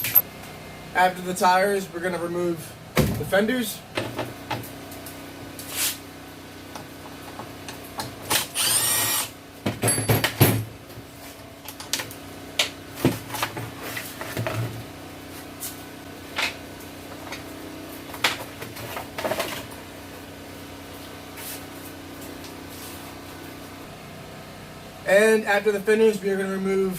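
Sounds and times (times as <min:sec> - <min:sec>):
tools and metal parts clinking: 0:00.0 - 0:00.2, 0:09.8 - 0:10.4
power drill whirring: 0:08.3 - 0:09.4.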